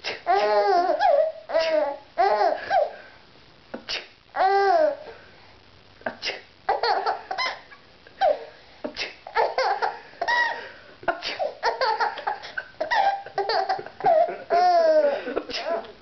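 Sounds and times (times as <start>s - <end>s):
baby laughing: 0.3s - 2.9s, 6.7s - 8.5s, 9.3s - 10.7s, 11.3s - 15.9s.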